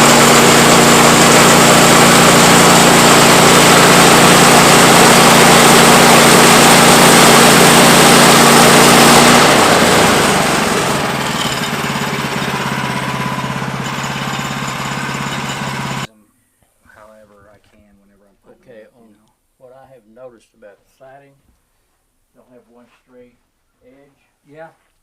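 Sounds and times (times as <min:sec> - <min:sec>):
saw blade cutting log: 0:00.0 - 0:16.1
sawmill gas engine running: 0:00.0 - 0:16.1.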